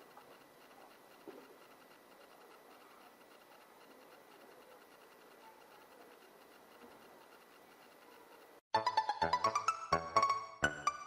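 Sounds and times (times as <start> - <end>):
bright melodic background music: 8.8 - 11.0.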